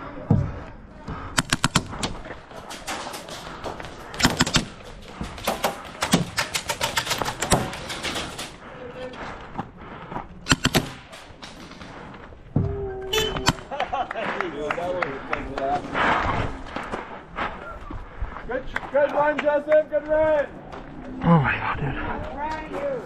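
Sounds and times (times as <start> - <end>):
airsoft guns firing rapid shots: 1.4 - 2.1, 4.2 - 4.8, 5.4 - 8.4, 10.4 - 11.1.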